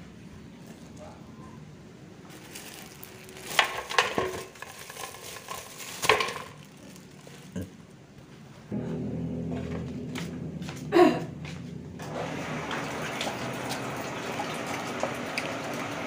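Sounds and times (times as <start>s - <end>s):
vegetables and container clattering: 2.3s - 7.7s
water running: 12.0s - 16.0s.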